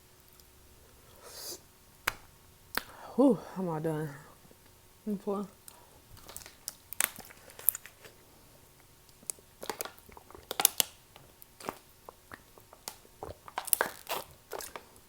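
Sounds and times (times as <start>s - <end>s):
chewing and mouth noises: 8.8s - 15.0s.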